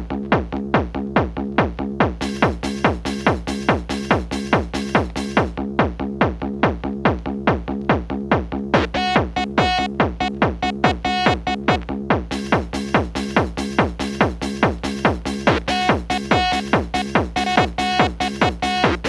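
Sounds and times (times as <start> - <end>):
fast kick drum: 0.0 - 19.0
electronic dance music: 2.2 - 5.6, 8.8 - 19.0.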